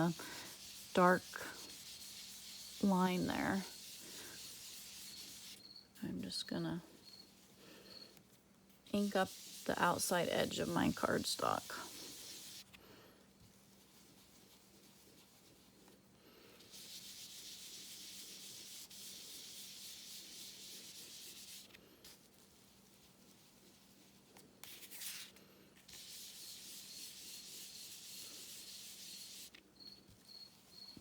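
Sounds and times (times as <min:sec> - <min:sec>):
brush scratching on card: 0:00.0 - 0:05.7, 0:08.8 - 0:12.8, 0:13.4 - 0:16.0, 0:16.6 - 0:29.6.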